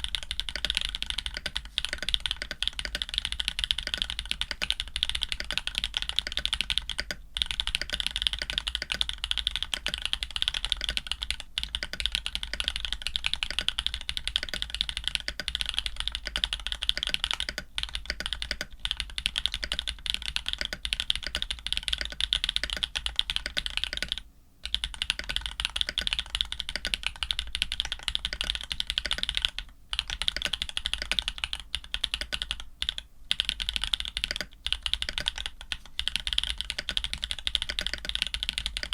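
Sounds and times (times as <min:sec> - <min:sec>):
mechanical keyboard typing: 0:00.0 - 0:38.9.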